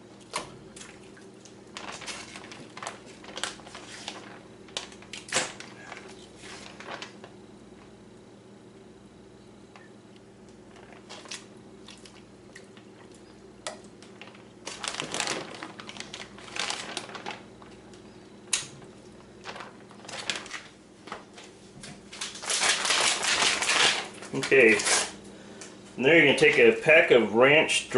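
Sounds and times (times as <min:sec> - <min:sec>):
plastic packaging crinkling: 0:01.4 - 0:08.0, 0:13.9 - 0:25.2.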